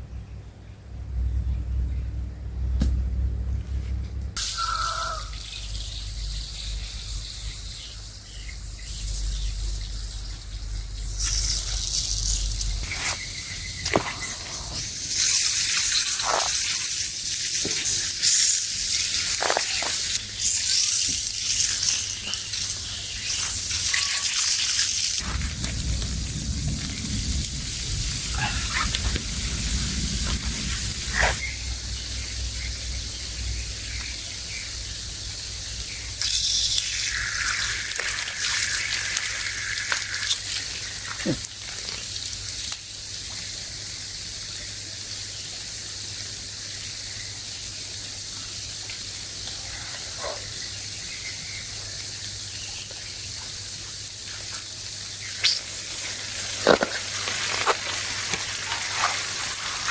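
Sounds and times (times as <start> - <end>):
water running: 10.4 - 42.7, 55.1 - 59.9.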